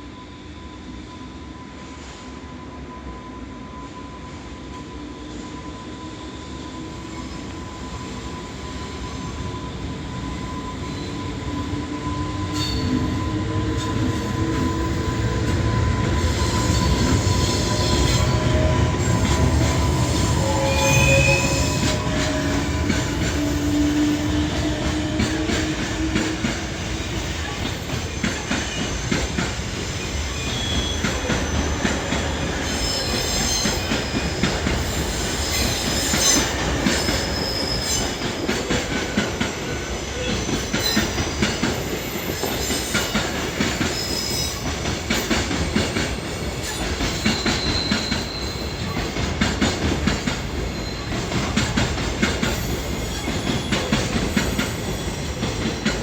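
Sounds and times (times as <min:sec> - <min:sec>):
high wheel squeals: 0:08.4 - 0:29.2, 0:30.0 - 0:38.4, 0:46.1 - 0:49.0
train wheels clacking over rail joints: 0:21.5 - 0:56.0.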